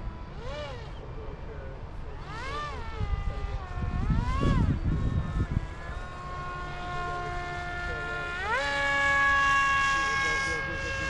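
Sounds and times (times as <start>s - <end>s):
model jet motor whining: 0.0s - 11.0s
gusty low rumble: 1.9s - 7.9s.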